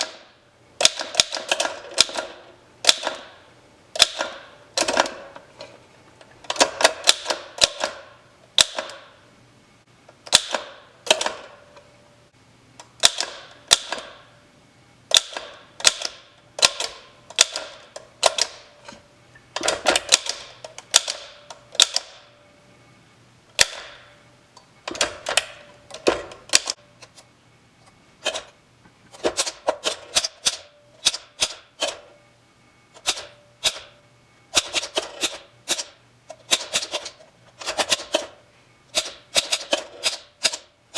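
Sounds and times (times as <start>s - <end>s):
manual typewriter keys clacking: 34.6s - 38.3s, 38.9s - 40.7s.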